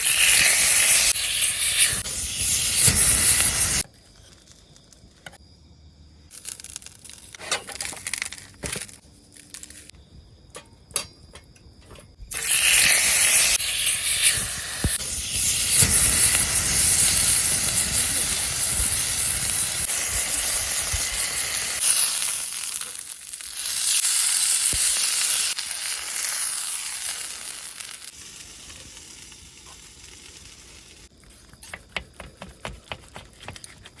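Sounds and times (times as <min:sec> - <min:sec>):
steak sizzling over a campfire: 0:00.0 - 0:04.8, 0:06.3 - 0:08.4, 0:12.3 - 0:31.7.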